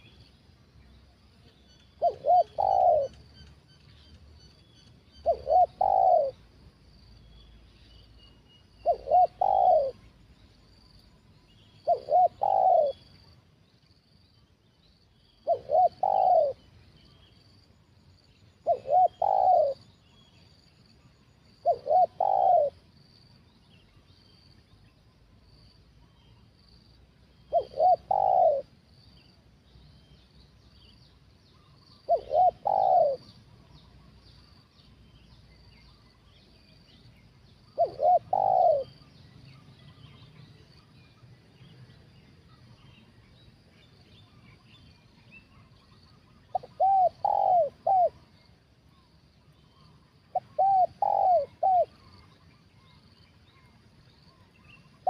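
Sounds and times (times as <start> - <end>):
dove cooing: 2.0 - 3.5, 5.2 - 6.4, 8.8 - 10.0, 11.8 - 13.1, 15.4 - 16.7, 18.6 - 19.8, 21.6 - 22.9, 27.5 - 28.7, 32.0 - 33.5, 37.7 - 39.1, 45.6 - 48.4, 50.3 - 52.4.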